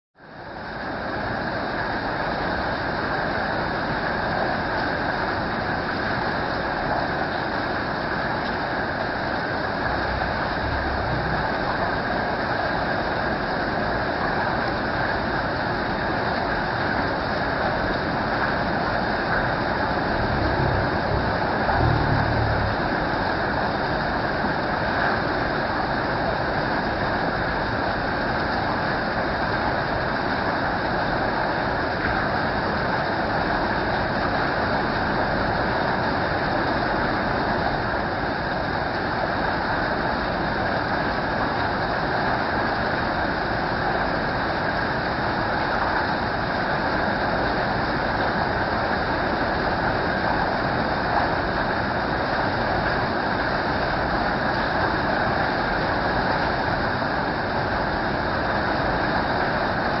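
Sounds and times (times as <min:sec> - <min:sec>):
steady rain hiss: 0:00.2 - 1:00.0.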